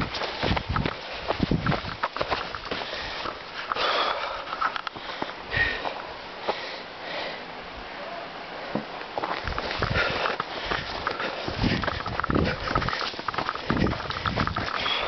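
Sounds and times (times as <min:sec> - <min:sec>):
runner breathing hard: 0:00.3 - 0:08.8, 0:09.4 - 0:15.0
footfalls: 0:08.7 - 0:15.0.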